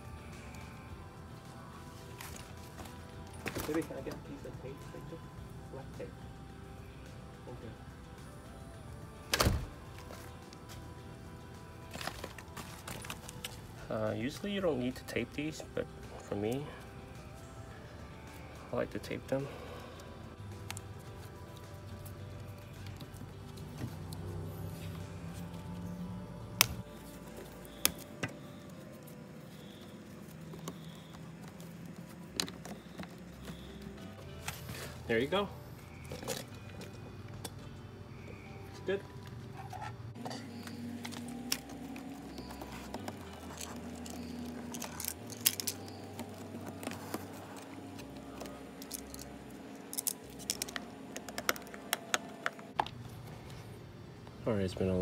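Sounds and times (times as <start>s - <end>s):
hand tools clicking and rattling: 39.5s - 52.6s.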